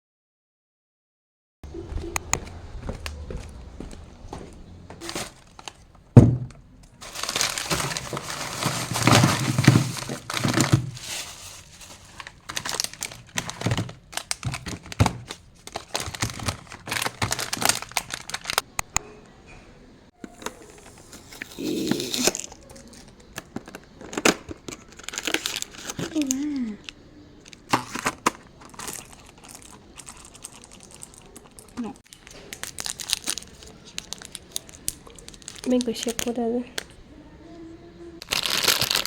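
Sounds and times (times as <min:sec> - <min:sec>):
plastic packets crinkling: 0:05.0 - 0:18.8, 0:20.3 - 0:37.0, 0:38.2 - 0:39.0
thump: 0:06.2 - 0:06.5.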